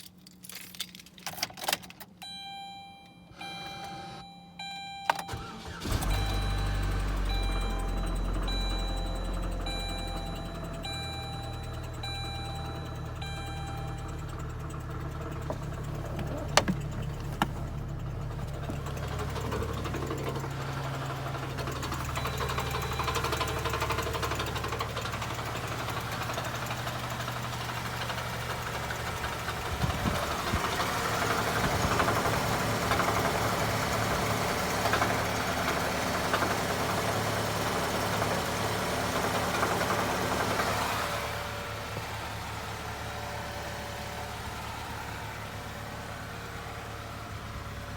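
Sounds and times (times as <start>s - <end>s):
high beep: 2.2s - 5.4s, 6.1s - 14.1s
car engine knocking: 6.5s - 47.9s.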